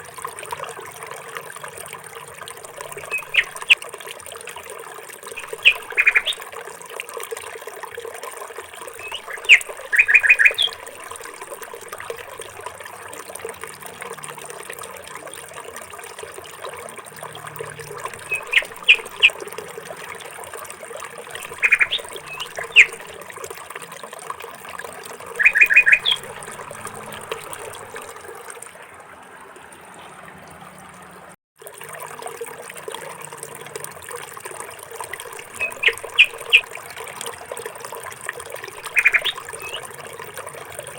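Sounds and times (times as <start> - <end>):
trickle of running water: 0.0 - 40.9
small birds chirping: 2.9 - 3.8, 5.3 - 6.4, 8.9 - 11.7, 17.9 - 19.4, 21.3 - 23.2, 25.3 - 27.7, 35.4 - 36.6, 38.6 - 39.8.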